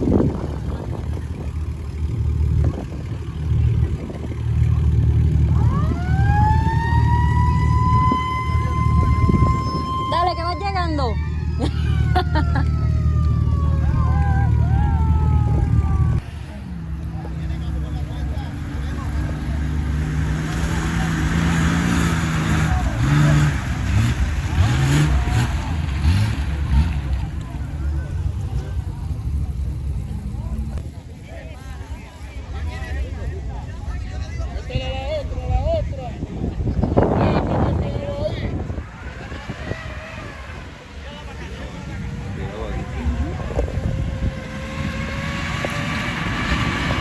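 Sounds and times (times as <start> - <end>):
low rumbling engine: 0.0 - 47.0
people talking: 0.0 - 47.0
siren winding up: 5.6 - 16.2.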